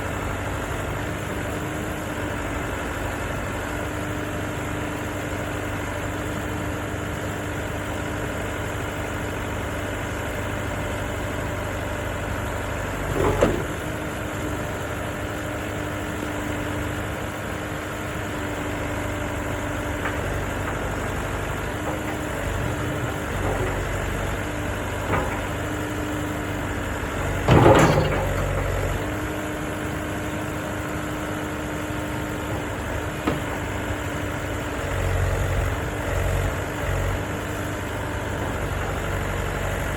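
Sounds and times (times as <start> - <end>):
loud metallic clunks: 27.2 - 29.0.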